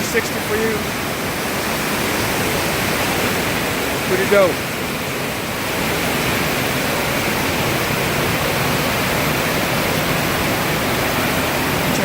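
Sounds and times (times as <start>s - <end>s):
waterfall crashing: 0.0s - 12.0s.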